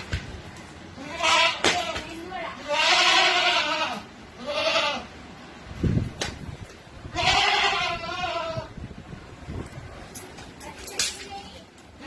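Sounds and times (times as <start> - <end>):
goat bleating: 1.0 - 5.1, 7.1 - 8.7.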